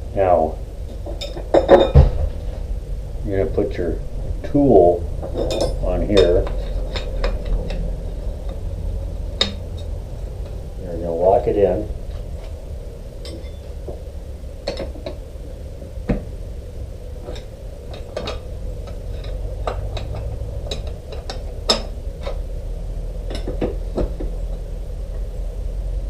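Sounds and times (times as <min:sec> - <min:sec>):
metal tools clinking and knocking: 0:01.0 - 0:02.1, 0:05.2 - 0:07.9, 0:13.2 - 0:13.6, 0:17.2 - 0:22.4, 0:23.3 - 0:24.6.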